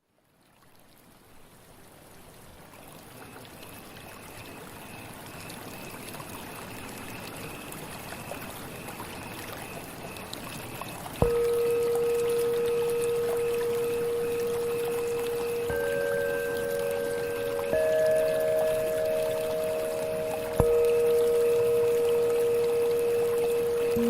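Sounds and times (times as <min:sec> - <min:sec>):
creek water flowing: 0:06.3 - 0:24.0
faint high note dashes: 0:11.2 - 0:24.0.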